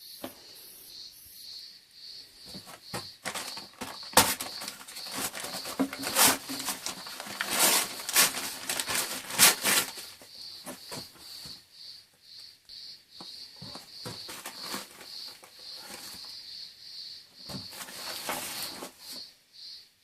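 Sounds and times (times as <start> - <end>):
hand tool scraping wall: 2.8 - 10.0, 17.5 - 19.2.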